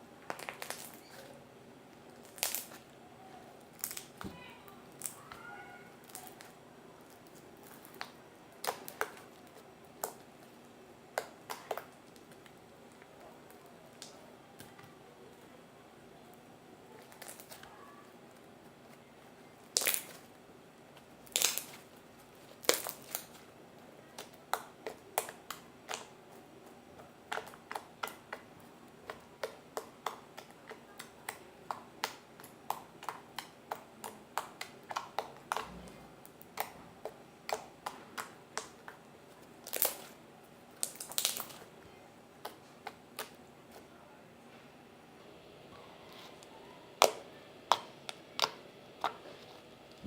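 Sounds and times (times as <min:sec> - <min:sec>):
slime clicking and popping: 0:00.3 - 0:01.2, 0:02.2 - 0:02.8, 0:03.7 - 0:05.4, 0:06.0 - 0:10.3, 0:11.1 - 0:12.5, 0:17.0 - 0:17.6, 0:19.6 - 0:20.3, 0:21.2 - 0:21.9, 0:22.5 - 0:23.4, 0:24.1 - 0:26.2, 0:27.0 - 0:39.0, 0:39.6 - 0:41.7.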